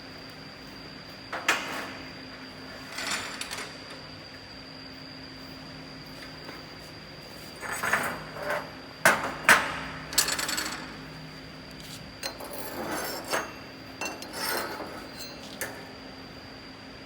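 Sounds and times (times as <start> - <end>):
metal scraping: 12.3 - 15.6.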